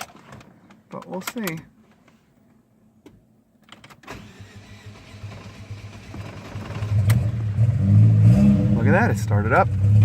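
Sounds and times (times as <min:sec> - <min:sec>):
engine cranking: 0:04.1 - 0:07.4.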